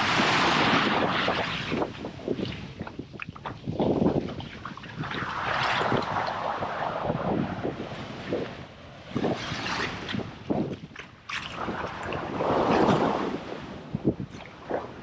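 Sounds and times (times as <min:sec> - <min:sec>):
surf washing onto beach: 0:00.0 - 0:02.1, 0:05.0 - 0:10.3, 0:11.6 - 0:14.1
wind buffeting microphone: 0:00.0 - 0:15.0.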